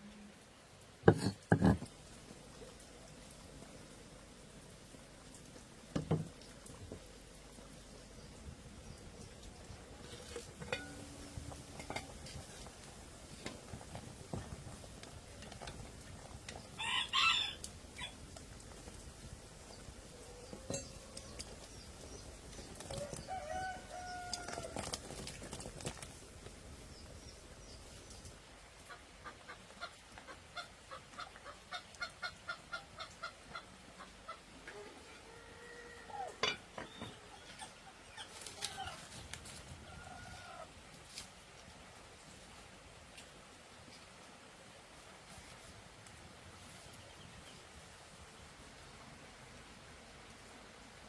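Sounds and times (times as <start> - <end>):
chickens clucking: 28.8 - 35.1.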